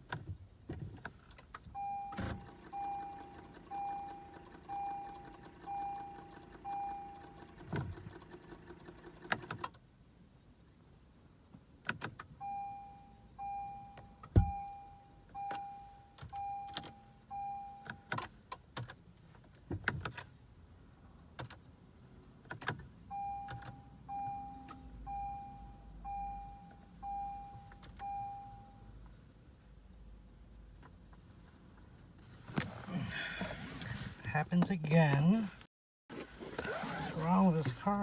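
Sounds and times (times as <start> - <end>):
car warning chime beeping: 1.7 - 8.5, 12.3 - 18.3, 23.1 - 29.0.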